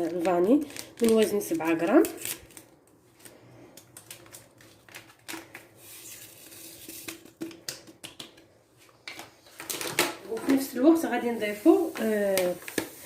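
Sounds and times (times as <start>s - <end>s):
paper sachet rustling: 0.0s - 7.1s.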